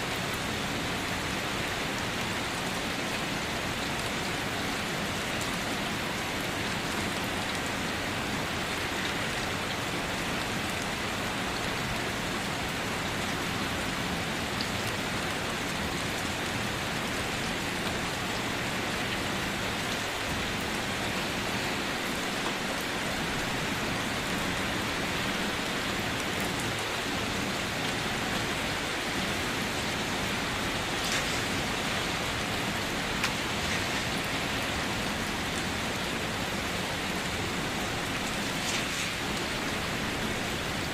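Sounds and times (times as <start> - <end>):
rain drumming on a car roof: 0.0 - 40.9
sharp raindrop ticks: 30.8 - 34.7, 38.1 - 40.4.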